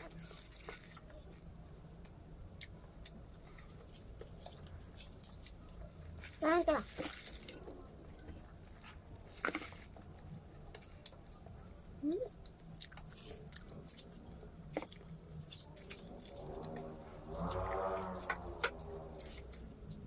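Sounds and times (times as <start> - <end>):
mouth chewing and crunching: 2.6 - 20.0.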